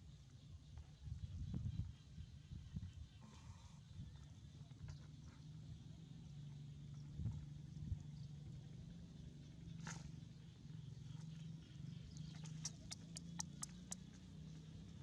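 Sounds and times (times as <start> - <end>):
sharp clicks: 12.4 - 14.0
monkey squeak: 12.6 - 14.0.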